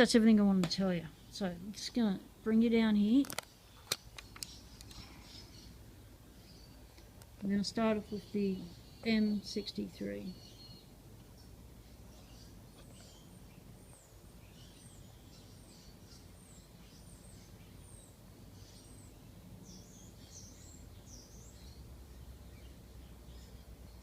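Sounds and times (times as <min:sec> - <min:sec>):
small birds chirping: 0:00.0 - 0:24.0
steady low hum: 0:00.0 - 0:24.0.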